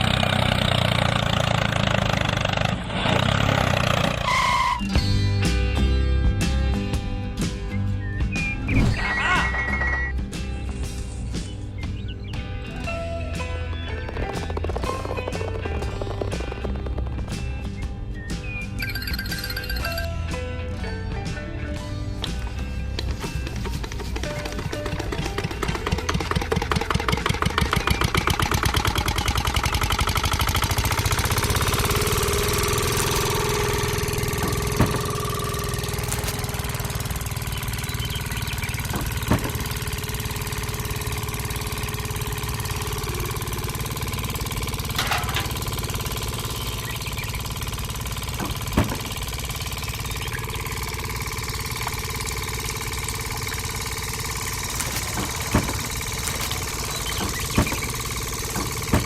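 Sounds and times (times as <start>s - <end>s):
small engine running: 0.0s - 59.0s.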